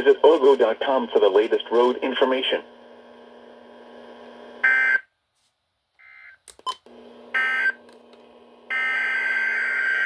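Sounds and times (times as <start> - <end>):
low steady receiver hum: 0.0 - 4.9, 6.7 - 10.0
clicks: 6.4 - 7.0.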